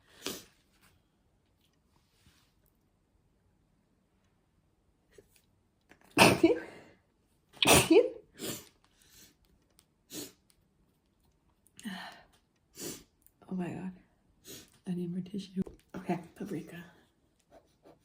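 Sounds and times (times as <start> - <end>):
person sneezing: 6.2 - 6.8, 7.6 - 8.7.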